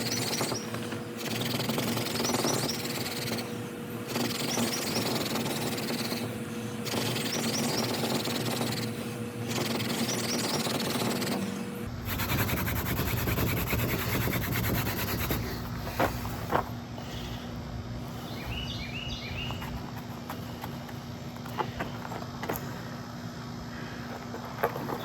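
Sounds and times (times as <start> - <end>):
bird chirping: 4.1 - 8.9, 18.2 - 19.7.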